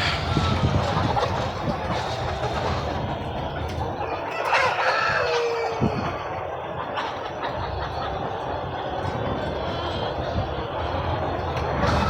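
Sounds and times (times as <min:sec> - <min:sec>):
rooster crowing: 0:00.0 - 0:00.9, 0:04.1 - 0:06.3
chickens clucking: 0:00.0 - 0:12.0.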